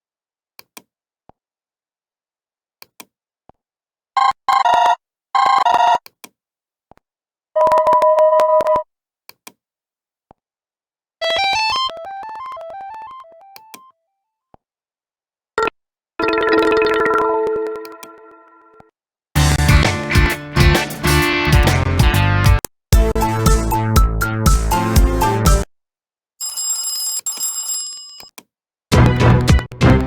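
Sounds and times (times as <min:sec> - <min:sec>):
run of stepped notes: 0:19.4 - 0:25.6
steady two-tone ring: 0:26.4 - 0:28.3.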